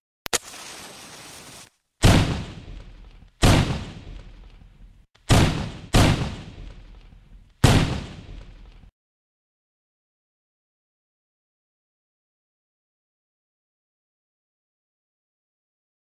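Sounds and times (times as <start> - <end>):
firecracker bangs: 2.0 - 4.4, 5.3 - 7.0, 7.6 - 8.7.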